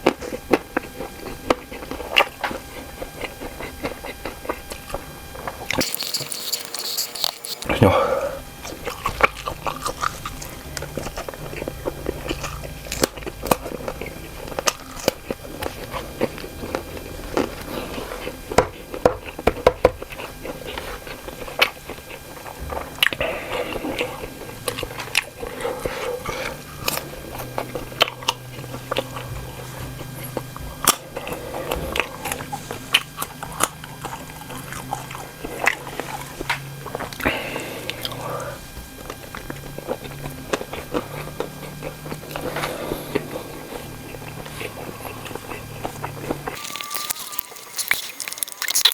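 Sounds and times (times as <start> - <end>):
person biting and chewing: 5.7 - 7.9, 8.7 - 18.3, 43.1 - 48.9.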